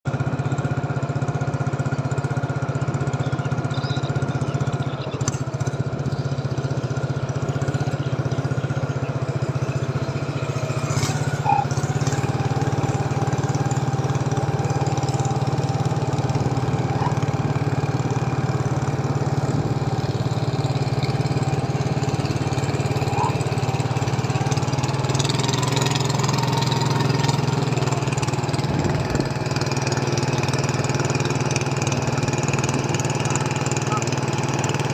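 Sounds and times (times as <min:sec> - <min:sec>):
boat engine humming: 0:00.1 - 0:34.9.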